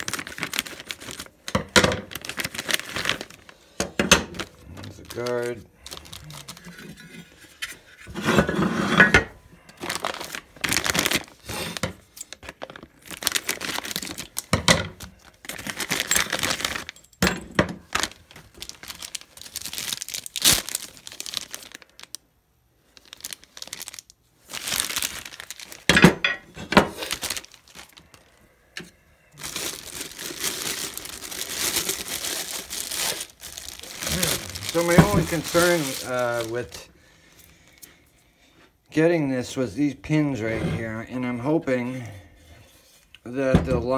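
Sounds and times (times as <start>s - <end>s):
packaging crinkling and rustling: 0.0s - 7.9s, 9.6s - 22.2s, 22.8s - 26.0s, 26.6s - 28.4s, 29.3s - 37.9s.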